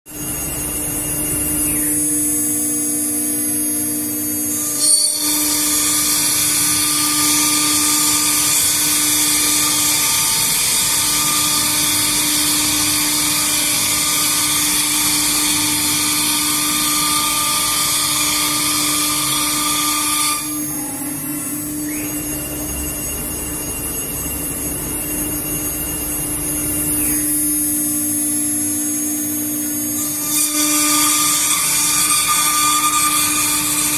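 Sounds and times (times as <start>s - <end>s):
router spindle whine: 0.1s - 33.9s
harsh wood cutting noise: 3.8s - 22.7s, 27.0s - 33.9s
steady high tone: 20.3s - 29.4s.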